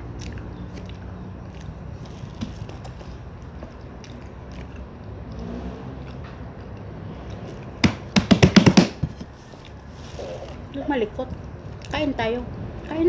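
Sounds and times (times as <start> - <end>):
chewing and biting food: 0.0 - 8.2, 9.2 - 13.0
steady low hum: 0.0 - 13.0
loud knocks and clacks: 7.8 - 9.4.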